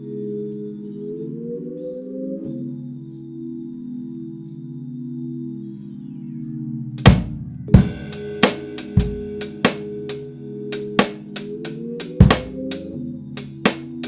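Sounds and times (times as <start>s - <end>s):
drum kit groove: 7.0s - 10.2s, 10.8s - 14.0s
sustained chords: 7.0s - 12.8s.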